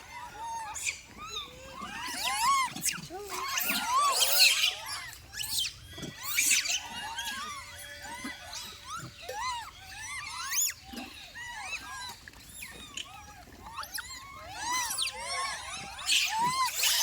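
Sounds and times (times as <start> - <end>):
monkey squeaking: 13.8 - 17.0.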